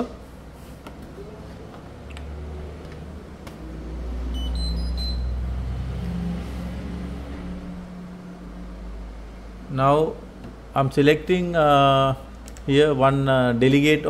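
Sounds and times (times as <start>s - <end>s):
low steady hum: 0.0s - 14.0s
rising electronic beeps: 4.2s - 5.7s.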